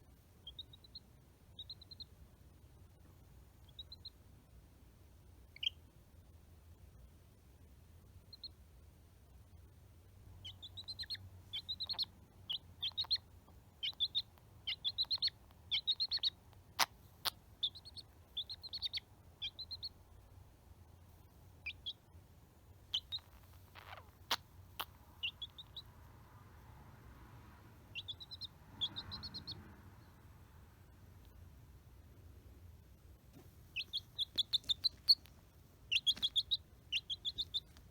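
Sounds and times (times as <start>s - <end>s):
chick peeping: 0.4s - 2.2s, 3.6s - 4.2s, 5.5s - 5.8s, 8.2s - 8.6s, 10.4s - 20.4s, 21.6s - 22.1s, 22.8s - 26.0s, 27.8s - 30.2s, 33.6s - 37.9s.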